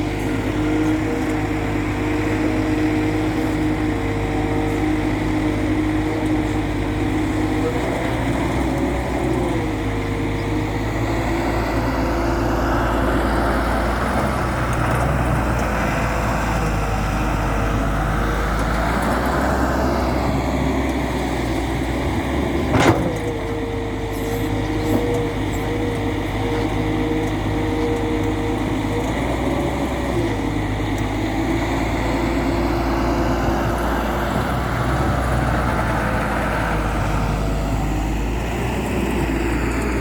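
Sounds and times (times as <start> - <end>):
excavator diesel engine running: 0.0 - 40.0.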